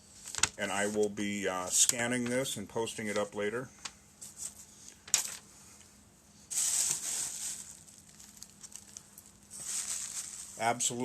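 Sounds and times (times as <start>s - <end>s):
packaging rustling and crinkling: 0.2s - 1.1s, 6.5s - 11.0s.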